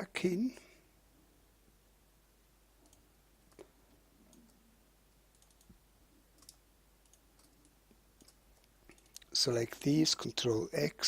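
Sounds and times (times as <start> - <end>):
mouse and keyboard clicking: 6.4 - 9.3.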